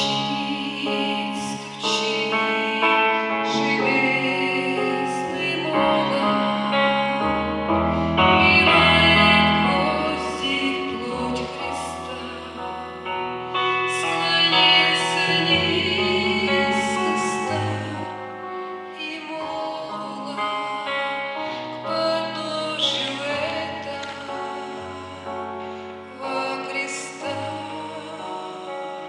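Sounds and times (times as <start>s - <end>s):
woman singing worship song: 0.0s - 29.0s.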